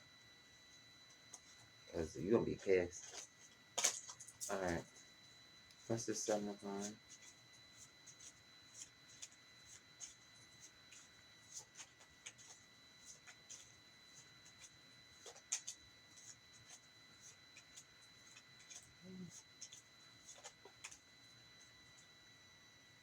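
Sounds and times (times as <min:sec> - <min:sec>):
faint high whine: 0:00.0 - 0:23.0
cards tapping and rustling: 0:03.0 - 0:04.7, 0:08.1 - 0:13.7, 0:14.5 - 0:21.0.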